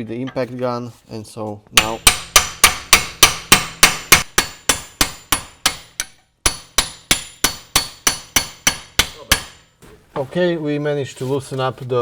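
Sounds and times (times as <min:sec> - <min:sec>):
hammer striking steel: 0:01.8 - 0:09.7.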